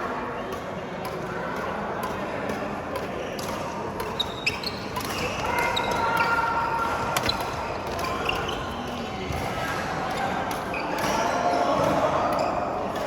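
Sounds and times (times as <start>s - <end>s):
racket striking shuttlecock: 0.4s - 6.0s
shoes squeaking on court floor: 4.0s - 6.4s, 7.1s - 9.0s, 10.1s - 11.7s.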